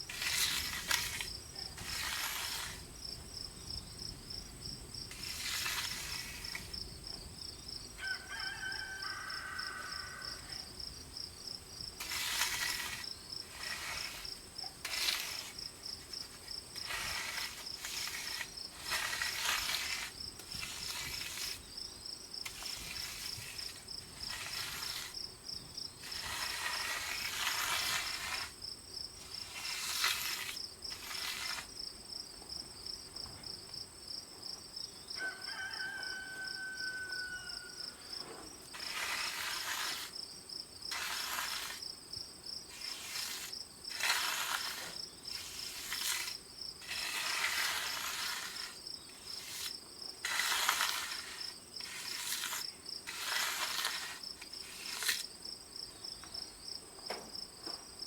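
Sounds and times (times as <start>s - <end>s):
scraping strokes: 0.0s - 2.9s, 5.1s - 6.9s, 12.0s - 21.8s, 22.4s - 25.2s, 26.0s - 28.6s, 29.2s - 31.8s, 35.2s - 40.2s, 40.9s - 41.9s, 42.6s - 55.4s
insects trilling: 2.6s - 57.8s.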